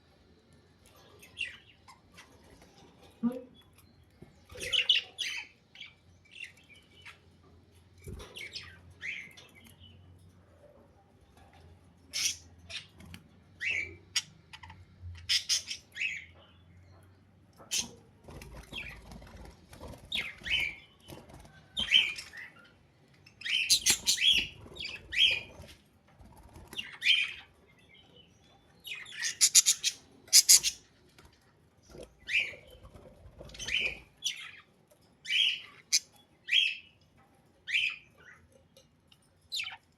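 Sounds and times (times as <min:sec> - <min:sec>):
budgerigars chirping: 0:29.1 - 0:30.8.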